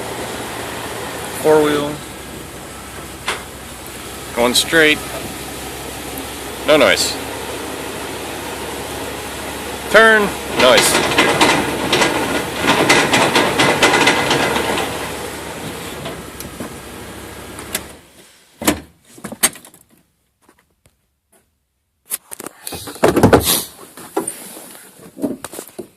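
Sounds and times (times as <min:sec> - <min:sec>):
engine running: 0:00.0 - 0:18.2
truck driveline banging and clunking: 0:00.0 - 0:19.8
knocks and clatters: 0:01.3 - 0:05.4, 0:09.9 - 0:16.8, 0:22.8 - 0:23.5.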